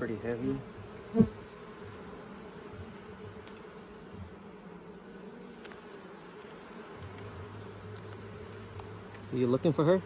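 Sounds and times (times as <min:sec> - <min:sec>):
honeybees buzzing: 0:00.0 - 0:10.0
faint click: 0:05.6 - 0:05.8.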